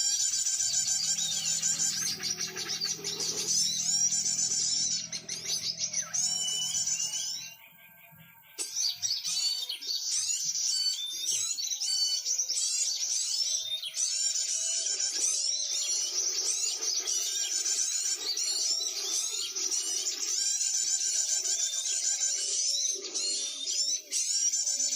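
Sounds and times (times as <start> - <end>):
low sustained tones: 0.0 - 8.6
small birds chirping and trilling: 0.0 - 24.9.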